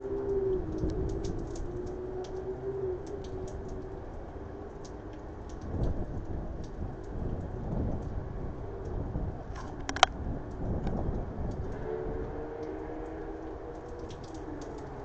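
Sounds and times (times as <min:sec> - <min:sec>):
thunder rumble: 0:05.2 - 0:15.0.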